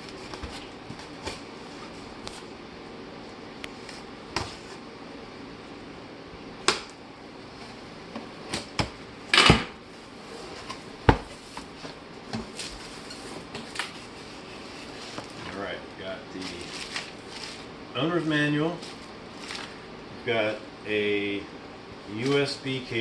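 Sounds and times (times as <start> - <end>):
rustling scrape: 12.5 - 15.5, 16.4 - 17.7.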